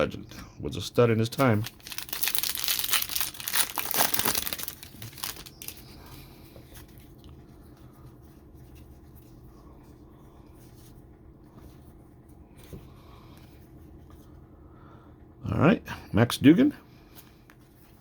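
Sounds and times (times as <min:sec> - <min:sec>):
plastic wrapper crinkling and tearing: 0:01.3 - 0:05.9.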